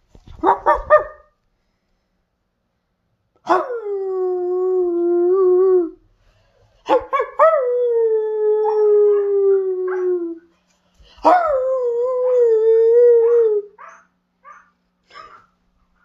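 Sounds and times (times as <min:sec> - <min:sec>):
husky howling: 0:07.3 - 0:10.4.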